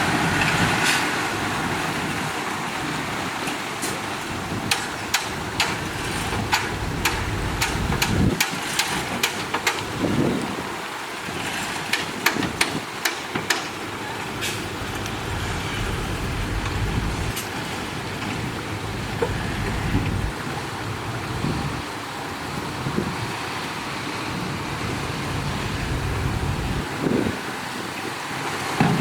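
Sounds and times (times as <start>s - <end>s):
sharp clicks and knocks: 4.6s - 9.9s, 11.9s - 17.6s
truck engine running: 5.4s - 8.3s, 14.2s - 21.9s.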